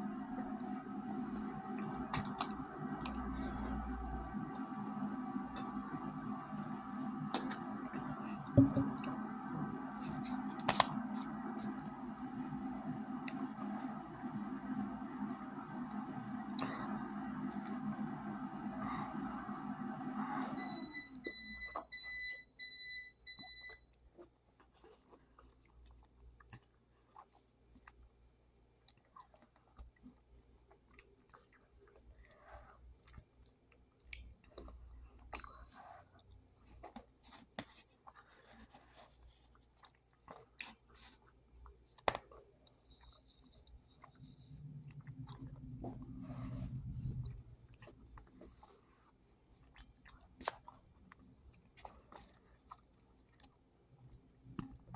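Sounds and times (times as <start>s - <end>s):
electronic device beeping: 20.5s - 23.7s
person chewing with mouth clicks: 34.1s - 37.2s, 49.6s - 53.6s.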